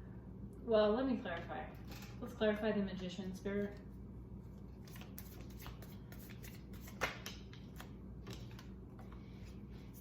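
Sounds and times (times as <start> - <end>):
cards being shuffled by hand: 4.7 - 10.0.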